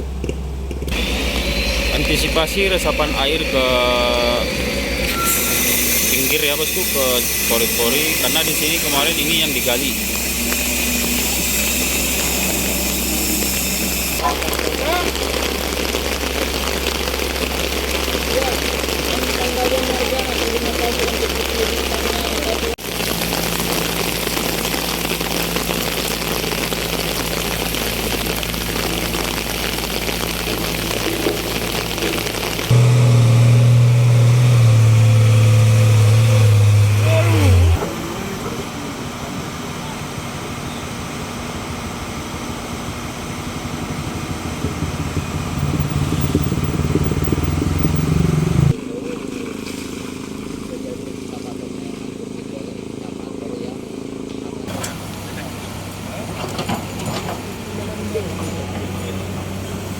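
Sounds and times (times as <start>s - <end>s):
vehicle engine idling: 30.1s - 59.9s.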